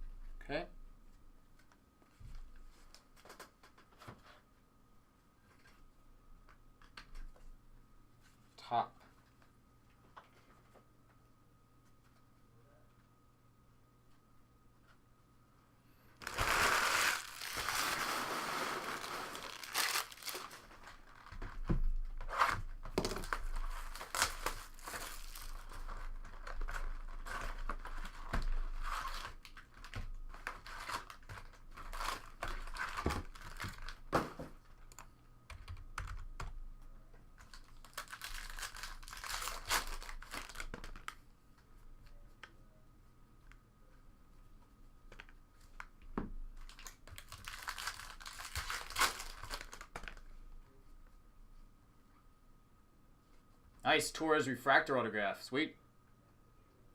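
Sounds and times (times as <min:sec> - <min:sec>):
card packaging tearing and crinkling: 0:16.2 - 0:21.6, 0:22.2 - 0:34.4, 0:37.4 - 0:41.2, 0:46.6 - 0:50.2.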